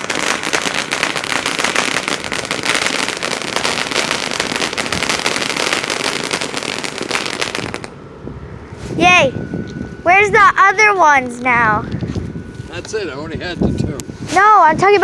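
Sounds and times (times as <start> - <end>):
firework crackling and popping: 0.0 - 8.0.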